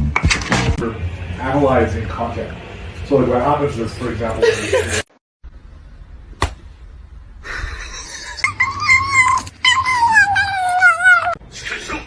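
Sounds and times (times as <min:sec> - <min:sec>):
cat meowing: 0:08.6 - 0:11.4.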